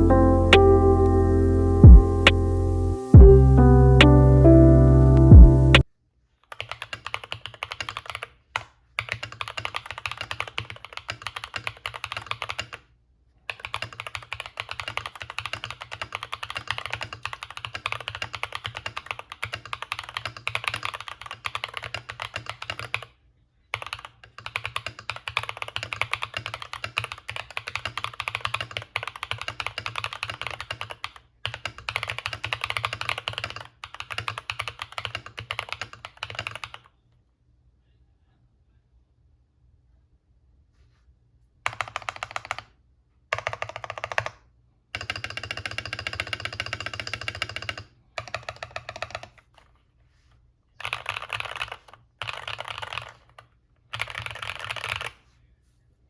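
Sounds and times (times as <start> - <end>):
mechanical keyboard typing: 6.5 - 12.9, 13.5 - 36.9, 41.7 - 44.4, 45.0 - 49.6, 50.8 - 55.2.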